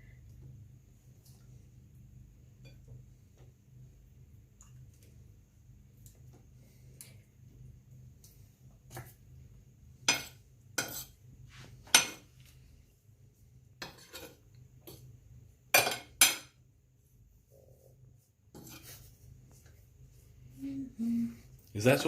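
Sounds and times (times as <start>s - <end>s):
dishes and utensils clinking: 11.8s - 12.3s, 15.7s - 16.6s.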